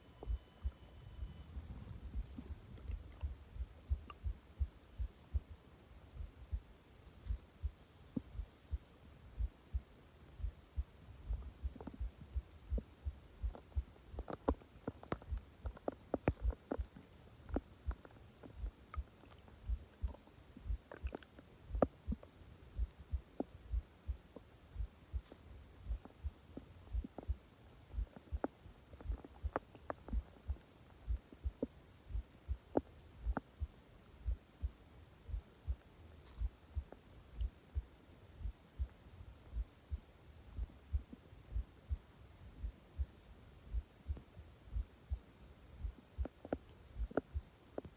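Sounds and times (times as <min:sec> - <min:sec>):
low rhythmic thumping: 0:00.0 - 0:16.9, 0:17.5 - 0:47.9
stomach gurgling: 0:13.5 - 0:22.3, 0:46.2 - 0:47.9.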